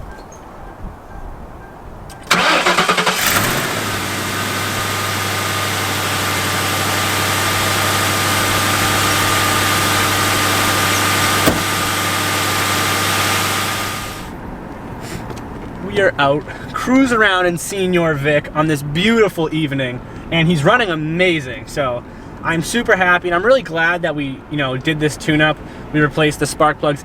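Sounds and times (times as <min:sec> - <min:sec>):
car engine starting and idling: 0:02.1 - 0:25.8
high whine: 0:03.3 - 0:14.4.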